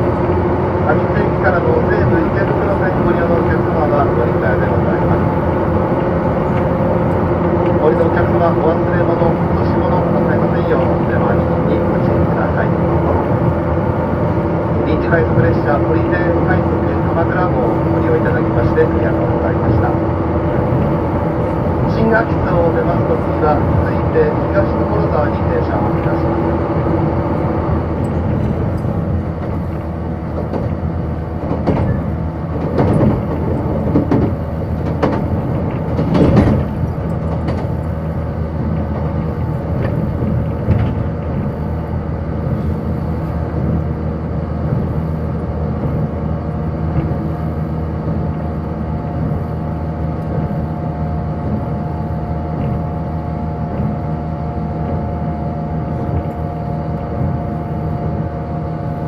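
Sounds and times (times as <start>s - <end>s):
train wheels rumbling on rails: 0.0s - 59.0s
sharp knocks and clatter: 28.0s - 30.8s, 31.4s - 41.6s.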